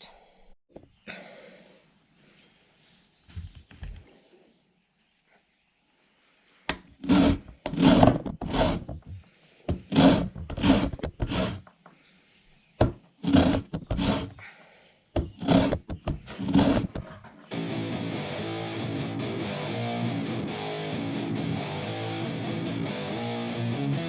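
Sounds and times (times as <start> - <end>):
lemon rasping on a grater: 7.0 - 9.0, 9.7 - 11.6, 13.2 - 14.4, 15.2 - 17.0.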